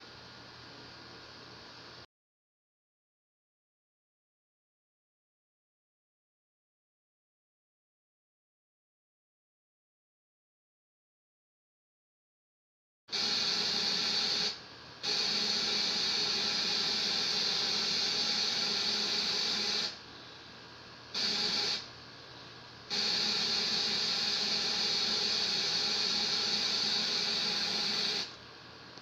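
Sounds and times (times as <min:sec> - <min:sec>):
television static hiss: 0:13.2 - 0:20.2, 0:20.8 - 0:29.0.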